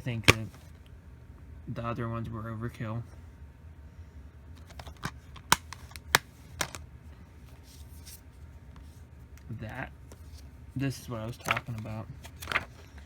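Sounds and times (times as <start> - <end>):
plastic cases clicking and tapping: 0.3 - 0.6, 4.6 - 6.8.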